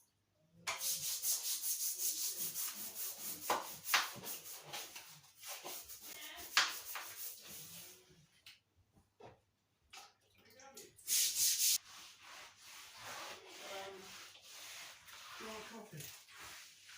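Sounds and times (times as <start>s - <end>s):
scrubbing a hard surface: 0.7s - 8.2s, 11.0s - 16.9s.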